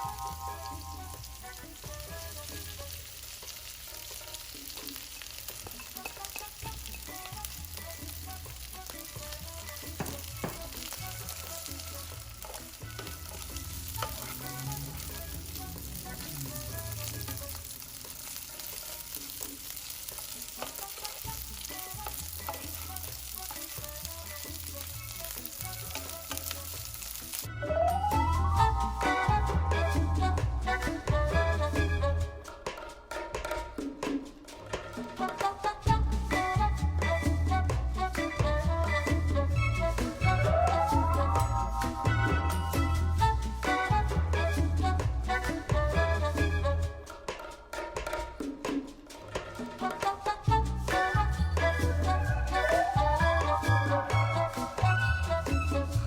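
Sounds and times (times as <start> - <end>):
food sizzling in a pan: 0.0 - 33.6, 34.2 - 56.0
utensil scraping a pan: 3.4 - 26.6.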